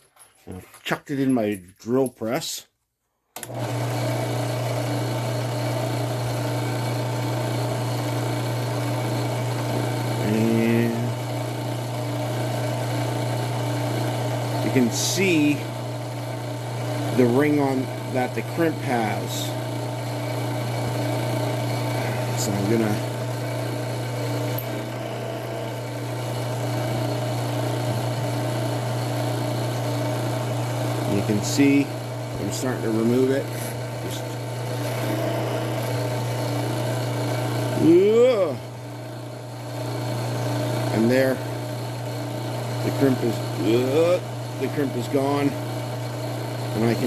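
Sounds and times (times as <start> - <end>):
drill press running: 3.4 - 47.0.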